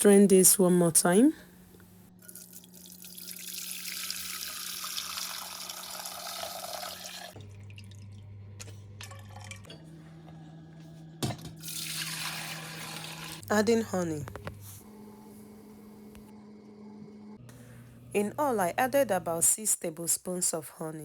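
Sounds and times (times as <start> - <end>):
tea pouring through a strainer: 2.2 - 8.2, 11.6 - 13.4
low steady hum: 7.3 - 21.0.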